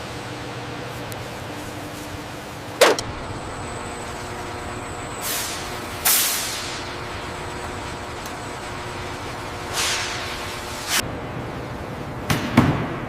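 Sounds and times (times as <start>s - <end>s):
heavy truck running: 2.8s - 10.9s
air hissing: 4.0s - 11.0s.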